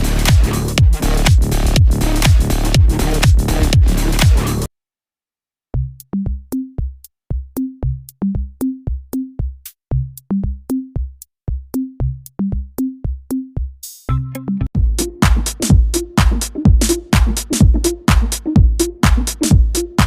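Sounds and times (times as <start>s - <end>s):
drum machine kick drum hits: 0.0s - 4.7s, 14.8s - 20.0s
electronic background music: 0.0s - 4.7s, 14.1s - 20.0s.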